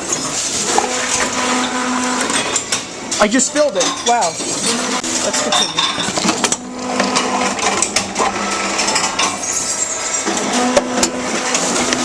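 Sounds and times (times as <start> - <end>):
machine motor hum: 6.2 - 12.0.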